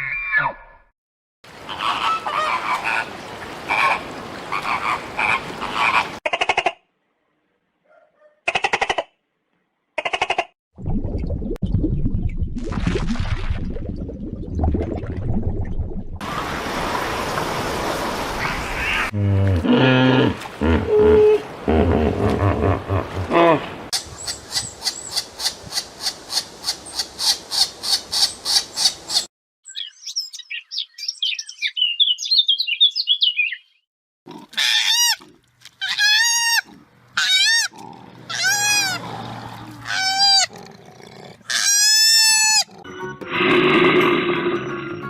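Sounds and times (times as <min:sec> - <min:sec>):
low animal growl: 0:19.1 - 0:22.4
high bird twittering: 0:24.0 - 0:33.8.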